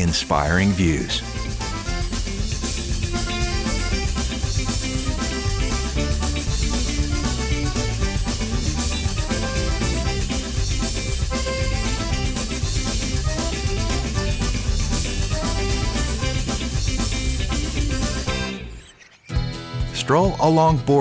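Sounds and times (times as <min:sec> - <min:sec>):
accordion: 0:00.0 - 0:19.8
drums with steady beat: 0:00.0 - 0:21.0
upbeat background music: 0:00.0 - 0:21.0.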